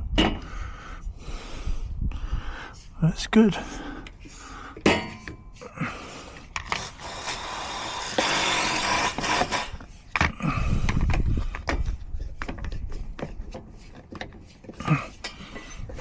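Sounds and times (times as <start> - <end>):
knocks of metal fittings: 0.2 - 0.5, 4.8 - 5.4
cordless drill driving screws: 6.6 - 10.0.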